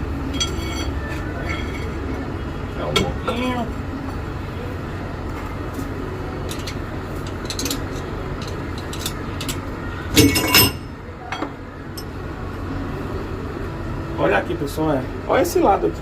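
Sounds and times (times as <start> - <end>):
steady background hum: 0.0 - 16.0
metal parts clinking and knocking: 0.3 - 2.0, 6.5 - 12.1
loud metal clatter: 7.3 - 10.9.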